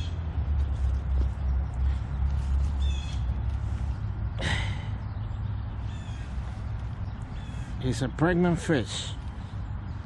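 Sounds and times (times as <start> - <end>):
bird calling: 0.0 - 0.3, 1.2 - 8.3
steady low rumble: 0.0 - 10.0.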